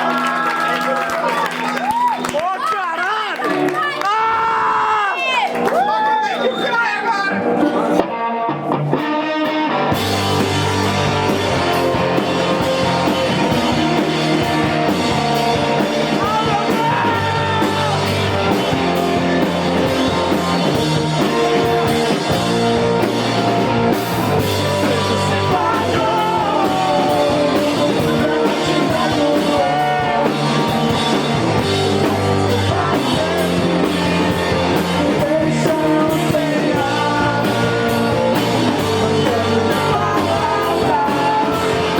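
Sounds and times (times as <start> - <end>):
live rock band playing: 7.3 - 41.9
person singing lead vocal: 16.0 - 18.3, 24.7 - 41.9.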